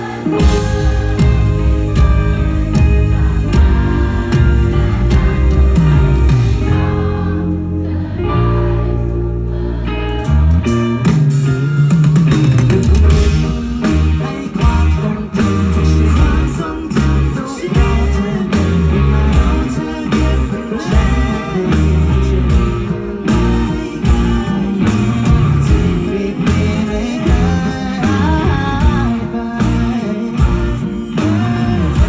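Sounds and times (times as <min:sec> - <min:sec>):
live rock band playing: 0:00.0 - 0:32.0
person singing: 0:12.8 - 0:32.0.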